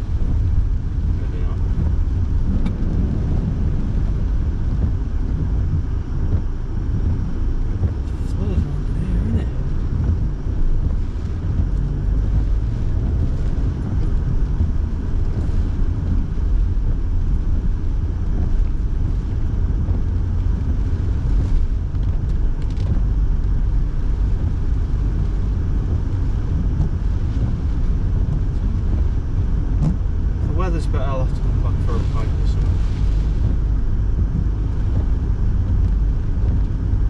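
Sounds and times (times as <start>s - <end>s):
car driving on wet road: 0.0s - 37.0s.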